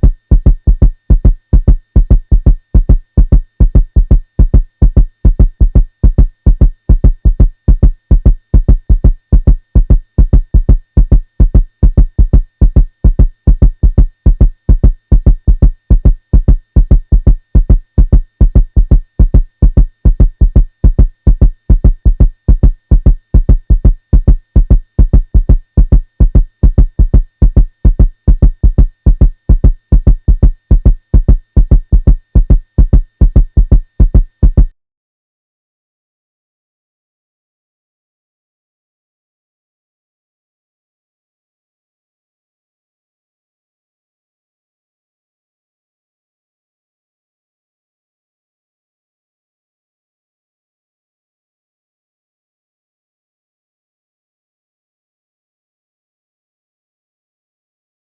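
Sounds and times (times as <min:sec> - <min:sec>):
heartbeat thumps: 0:00.0 - 0:34.7.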